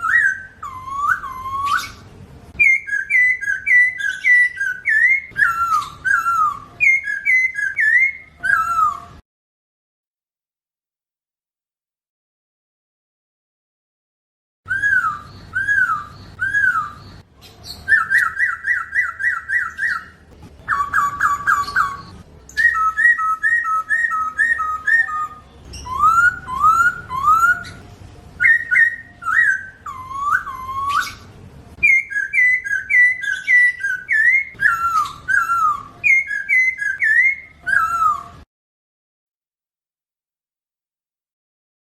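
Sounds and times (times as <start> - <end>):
laughingthrush whistled song: 0.0 - 9.2, 14.7 - 38.4.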